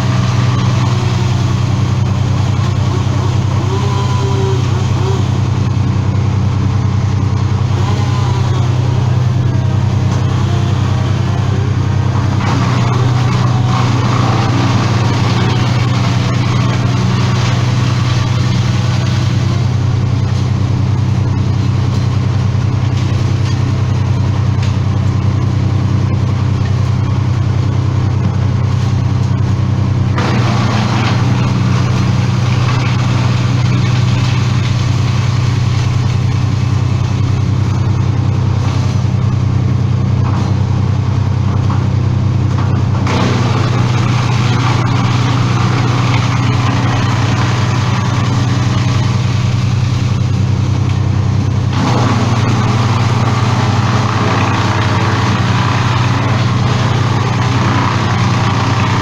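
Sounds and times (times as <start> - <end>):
harsh noisy layer: 0.0 - 19.8
engine running steadily: 0.0 - 59.0.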